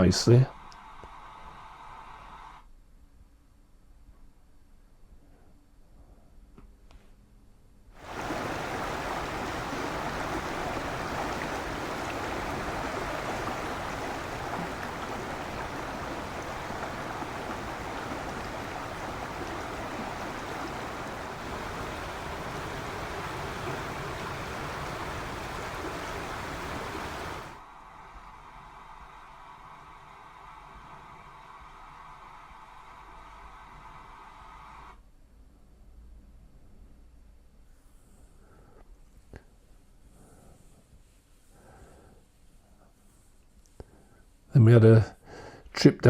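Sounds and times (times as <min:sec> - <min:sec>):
river water rushing: 0:08.0 - 0:27.6.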